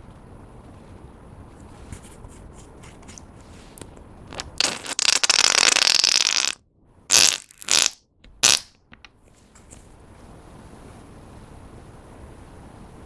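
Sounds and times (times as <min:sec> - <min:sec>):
slime squishing: 0:02.8 - 0:08.7.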